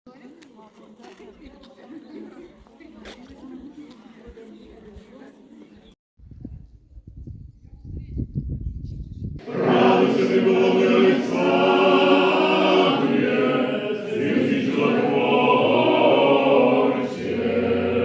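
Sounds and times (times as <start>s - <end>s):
men's choir chanting: 9.4s - 18.0s.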